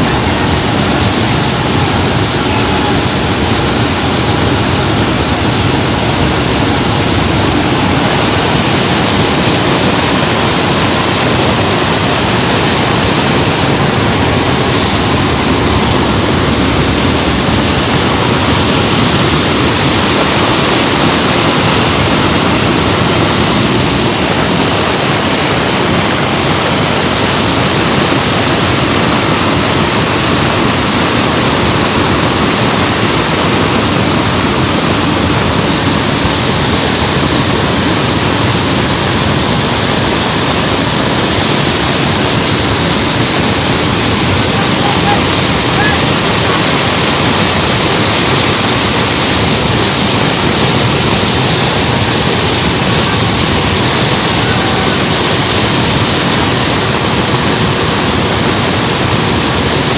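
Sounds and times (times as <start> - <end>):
aircraft cabin engine and airflow din: 0.0 - 57.8.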